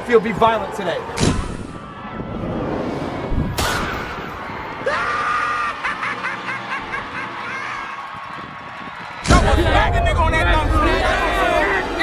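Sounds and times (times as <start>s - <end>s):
sharp hit: 1.2s - 4.8s.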